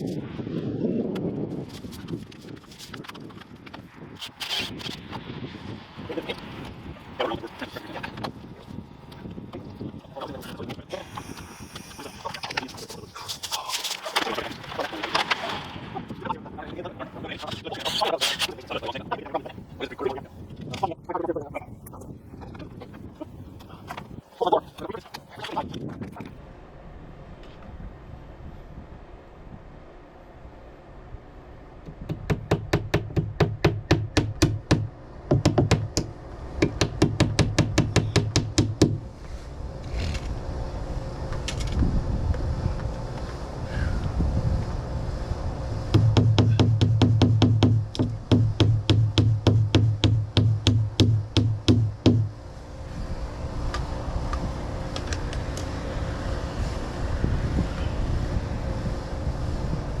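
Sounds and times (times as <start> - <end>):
faint hum: 0.0 - 60.0
low rumbling noise: 26.1 - 60.0
rapid sharp knocks: 32.1 - 39.0, 46.0 - 52.3.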